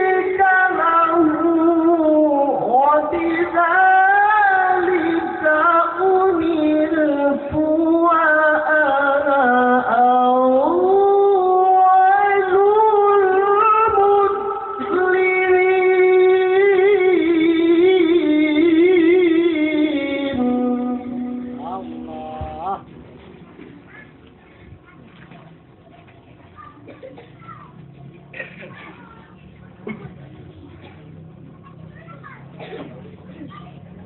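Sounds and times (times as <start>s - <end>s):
man reciting melodically: 0.0s - 22.9s.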